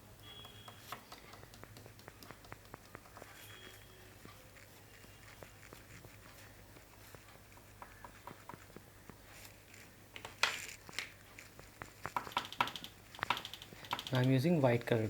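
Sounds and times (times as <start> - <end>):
oil pastel tapping on paper: 0.4 - 3.6, 5.0 - 9.2, 11.6 - 14.4.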